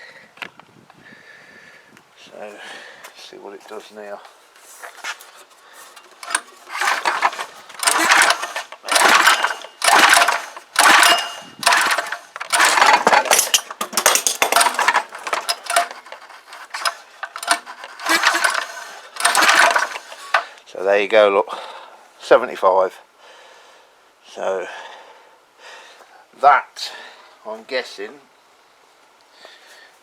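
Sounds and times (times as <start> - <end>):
engine pull-cord cranking: 5.0 - 20.6.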